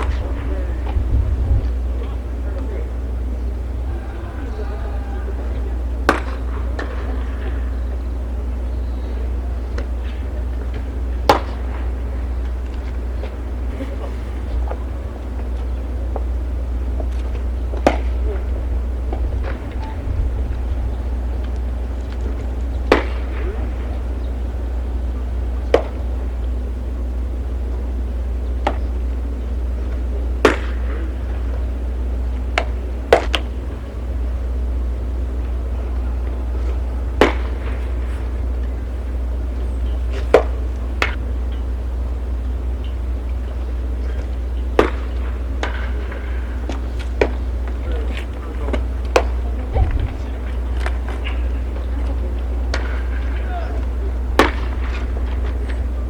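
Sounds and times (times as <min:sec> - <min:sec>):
steady low rumble: 0:00.0 - 0:56.0
baseballs popping into a mitt: 0:32.5 - 0:33.5.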